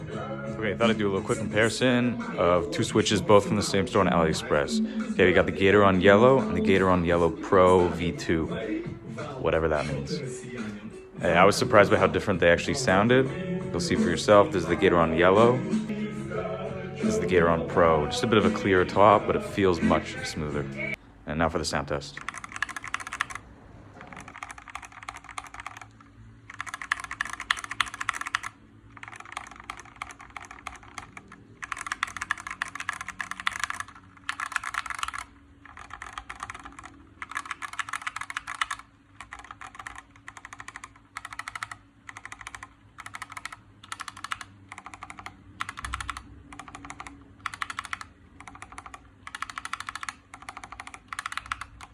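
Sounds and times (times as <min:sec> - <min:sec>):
mechanical keyboard typing: 0:22.2 - 0:23.4, 0:24.0 - 0:51.9.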